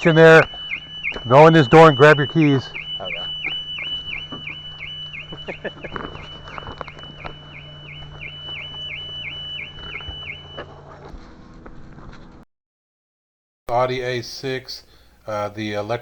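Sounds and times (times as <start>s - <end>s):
car alarm siren warbling: 0.0s - 11.0s.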